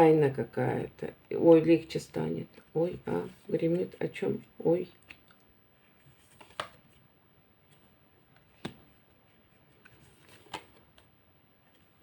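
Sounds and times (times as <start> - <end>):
cards snapping: 6.3 - 6.8.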